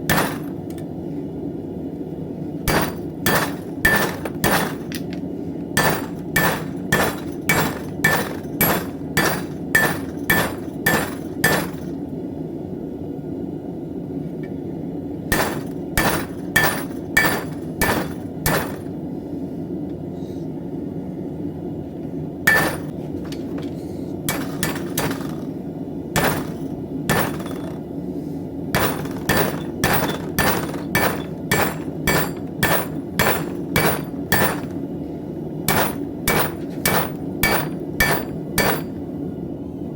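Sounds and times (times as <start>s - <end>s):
hammer striking steel on anvil: 0.1s - 0.8s, 2.7s - 5.0s, 5.8s - 12.0s, 15.3s - 18.9s, 22.5s - 22.9s, 24.3s - 25.4s, 26.2s - 27.8s, 28.8s - 34.8s, 35.7s - 39.0s.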